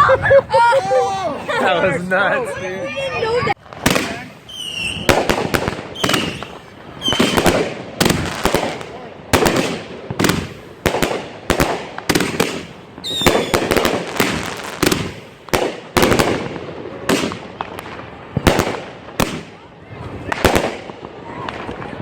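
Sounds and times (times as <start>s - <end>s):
fireworks crackling: 0.0s - 22.0s
fireworks banging: 1.9s - 22.0s
falling firework whistles: 3.8s - 8.2s, 12.4s - 15.1s.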